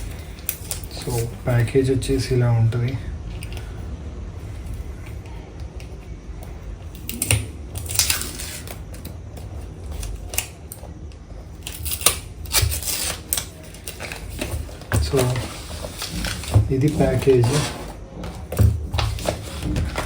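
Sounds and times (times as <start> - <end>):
cardboard packaging rustling: 11.8 - 20.0.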